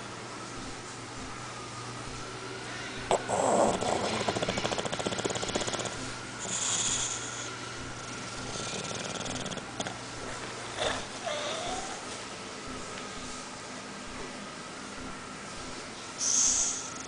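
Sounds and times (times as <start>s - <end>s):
dog snoring: 3.1s - 12.1s, 16.2s - 17.0s
hissing breaths through nose: 6.4s - 7.6s, 16.2s - 17.0s.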